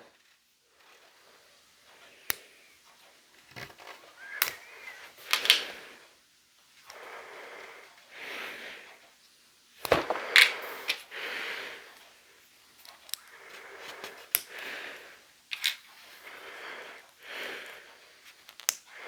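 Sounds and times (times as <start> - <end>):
plastic pieces clicking: 3.4 - 5.8, 12.8 - 13.4, 14.0 - 14.6, 15.5 - 15.9, 18.4 - 18.9
breathing through the nose: 6.9 - 9.1, 10.0 - 12.4, 13.2 - 15.4, 16.0 - 19.0.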